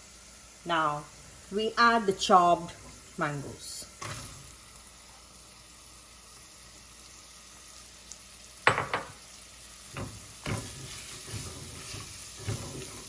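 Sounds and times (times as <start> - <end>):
mango sizzling in oil: 0.0 - 13.0
utensil knocking and scraping pan: 9.9 - 13.0.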